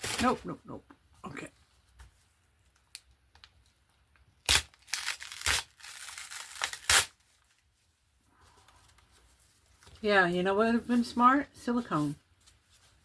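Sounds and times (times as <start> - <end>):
paper tearing and crinkling: 4.4 - 7.6.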